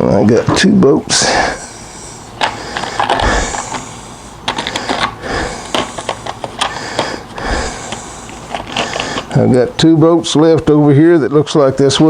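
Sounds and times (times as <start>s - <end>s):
hardware rustling and clicking: 1.6s - 9.5s.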